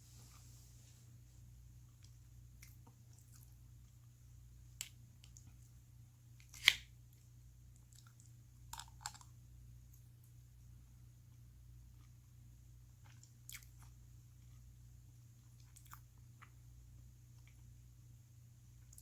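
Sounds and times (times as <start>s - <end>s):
faint chewing: 1.9s - 5.8s, 6.4s - 9.3s, 11.3s - 14.7s, 15.4s - 16.6s, 17.3s - 17.8s, 18.8s - 19.0s.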